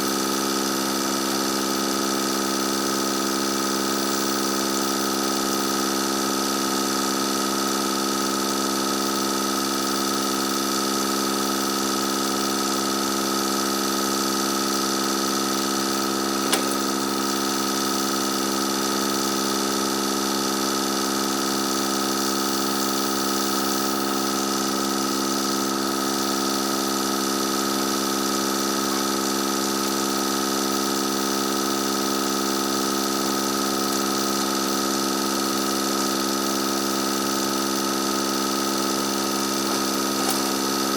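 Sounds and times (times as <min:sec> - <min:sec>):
tractor engine running: 0:12.2 - 0:40.9
sharp click: 0:16.4 - 0:16.9.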